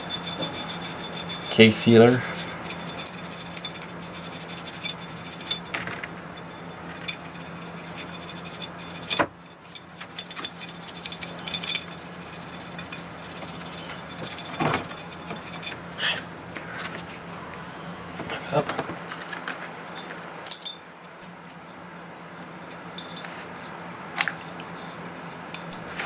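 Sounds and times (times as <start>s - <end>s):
metal parts rubbing and scraping: 0.0s - 15.8s, 22.8s - 26.0s
small metal clinks: 0.0s - 15.8s, 19.9s - 20.9s, 22.7s - 25.8s
steady low hum: 0.0s - 18.8s.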